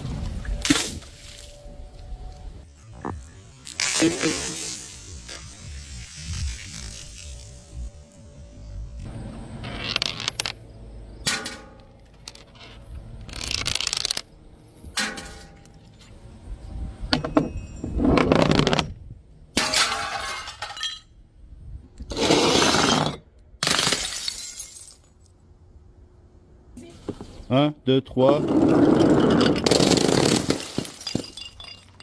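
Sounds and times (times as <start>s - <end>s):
glass bottles smashing: 19.6s - 21.1s, 23.6s - 25.1s, 28.4s - 32.0s.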